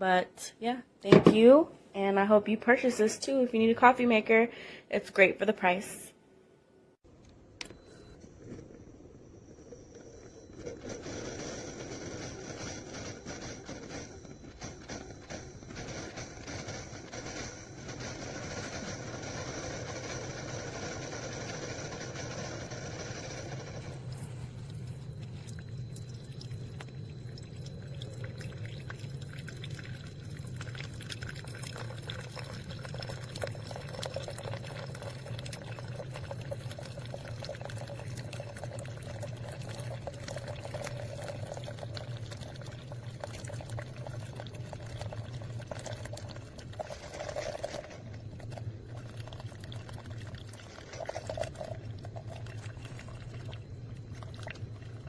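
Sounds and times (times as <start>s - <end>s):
coffee maker humming: 8.2s - 55.0s
liquid pouring into cup: 23.9s - 55.0s
small ticks and drips: 24.8s - 46.5s.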